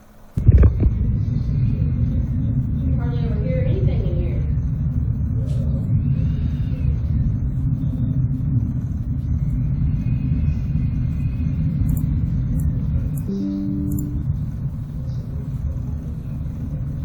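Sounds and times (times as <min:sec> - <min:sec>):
deep steady rumble: 0:00.0 - 0:17.0
short steady multi-pitch tone: 0:13.2 - 0:14.7.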